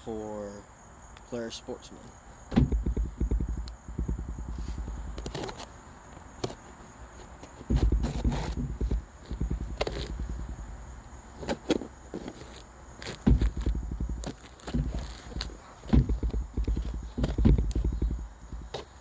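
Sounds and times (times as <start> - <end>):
microphone handling rumble: 2.0 - 5.6, 7.4 - 12.5, 13.1 - 19.0
box knocks clicks and rustles: 2.5 - 19.0.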